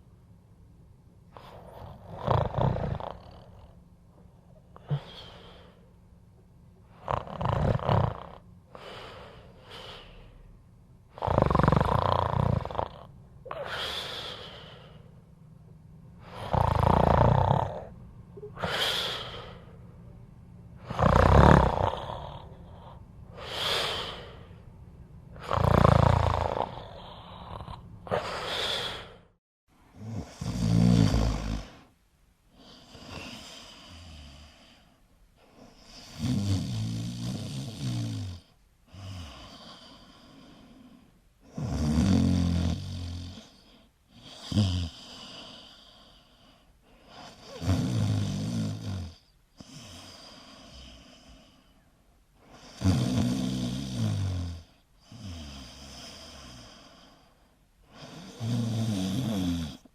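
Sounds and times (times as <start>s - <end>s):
person snoring: 1.4s - 3.8s, 4.8s - 5.8s, 6.9s - 10.3s, 11.1s - 15.1s, 16.2s - 19.7s, 20.8s - 24.6s, 25.4s - 29.3s, 30.0s - 31.9s, 35.7s - 46.4s, 47.2s - 51.7s, 52.5s - 59.9s.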